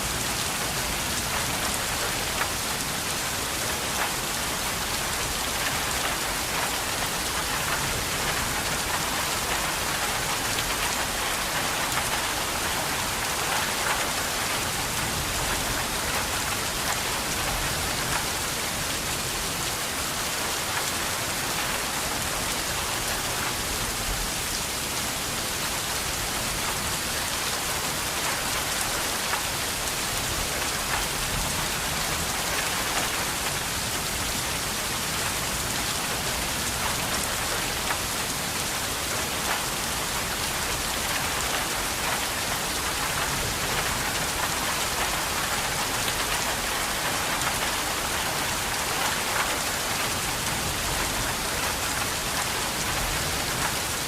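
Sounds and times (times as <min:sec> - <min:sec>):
steady rain falling: 0:00.0 - 0:54.0.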